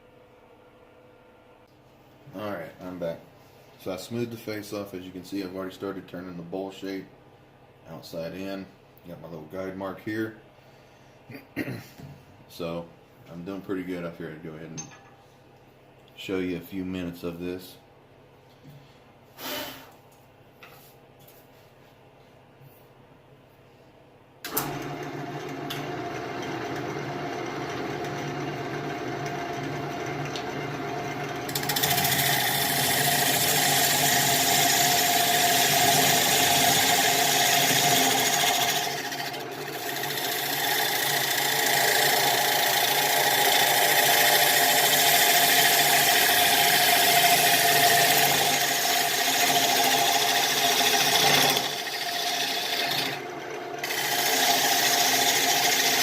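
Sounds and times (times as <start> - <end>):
lathe motor humming: 24.5 - 56.0.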